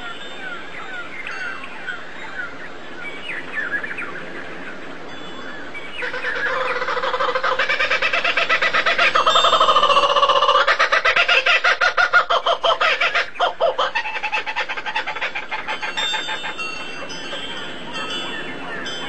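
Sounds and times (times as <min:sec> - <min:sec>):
small birds chirping: 0:05.6 - 0:19.0
rapidly pulsing bird call: 0:05.7 - 0:19.0.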